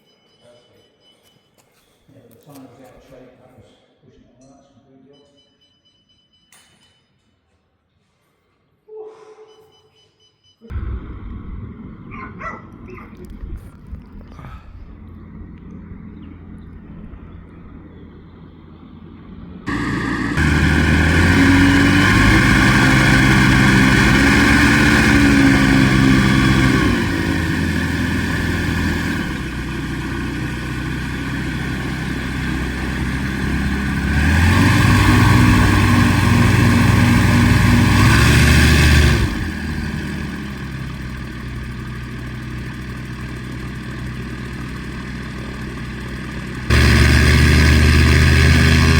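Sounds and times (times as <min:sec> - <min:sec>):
light aircraft engine and propeller: 0:10.7 - 0:48.9.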